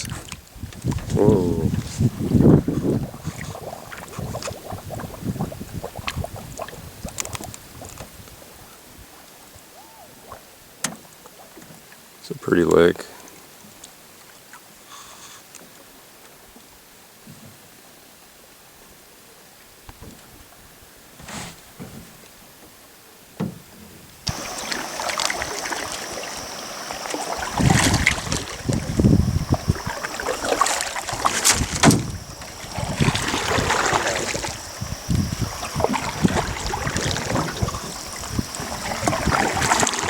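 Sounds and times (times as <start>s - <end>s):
wind gusting on microphone: 0.0s - 9.1s, 24.3s - 40.0s
paddle in water: 0.0s - 40.0s
thin steady high tone: 24.3s - 39.8s.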